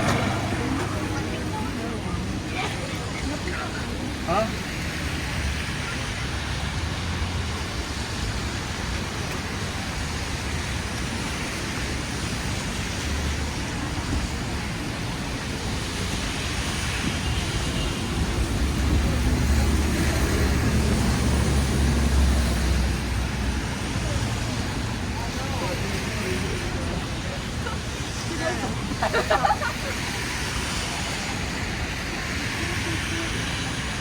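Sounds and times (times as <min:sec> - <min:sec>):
low engine rumble: 0:00.0 - 0:04.2
cars passing: 0:00.0 - 0:34.0.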